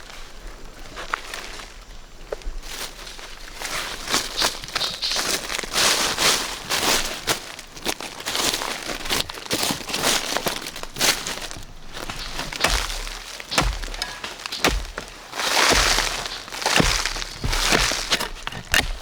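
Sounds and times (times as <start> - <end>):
rustling and crackling: 10.3 - 19.0
sharp snaps and knocks: 12.0 - 19.0.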